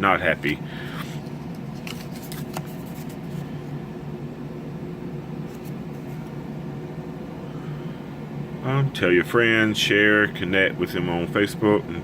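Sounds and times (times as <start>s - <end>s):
low mechanical room hum: 0.0s - 12.0s
paper card rustling: 0.5s - 3.5s, 5.5s - 6.4s.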